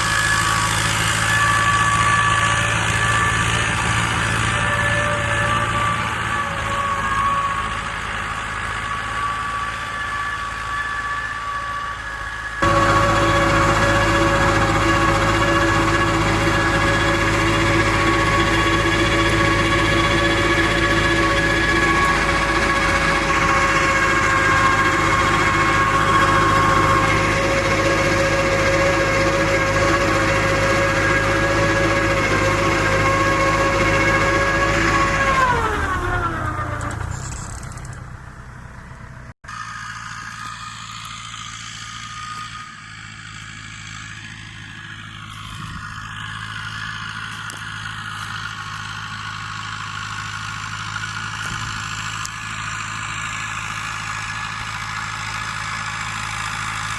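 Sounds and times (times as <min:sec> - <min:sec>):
steady high whine: 0:00.0 - 0:36.0
tractor diesel engine under load: 0:00.0 - 0:56.9.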